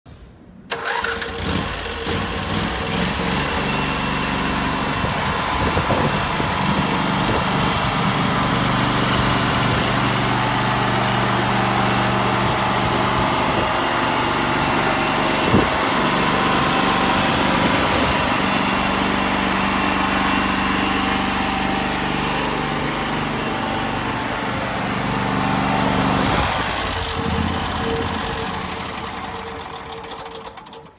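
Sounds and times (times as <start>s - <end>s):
pressure washer motor hum: 0.7s - 30.9s.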